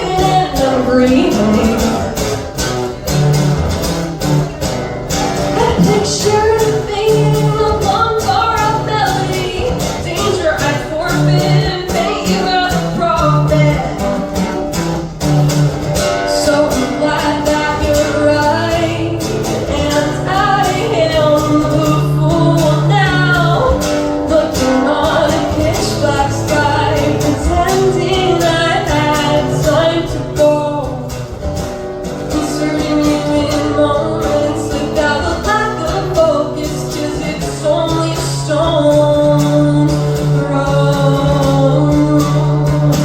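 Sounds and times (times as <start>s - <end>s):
person singing lead vocal: 0.0s - 2.8s, 5.4s - 14.3s, 16.2s - 43.0s
low bass notes: 0.0s - 11.8s, 17.8s - 38.0s
guitar: 0.0s - 43.0s.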